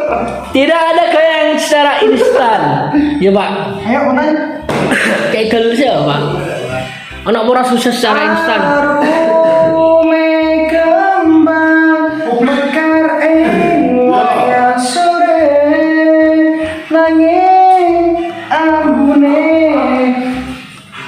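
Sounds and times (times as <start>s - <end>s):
person singing long notes: 8.2s - 21.0s.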